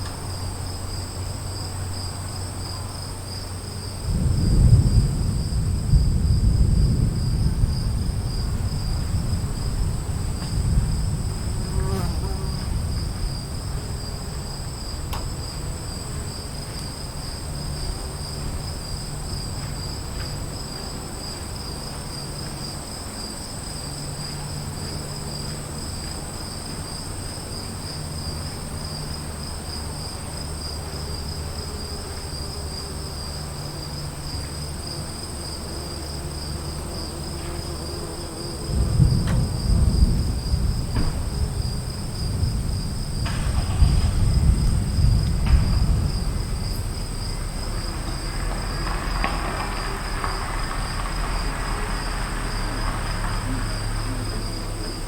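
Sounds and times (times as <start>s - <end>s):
thunder rumbling: 0.0s - 24.7s, 38.5s - 55.0s
insects chirring: 0.0s - 55.0s.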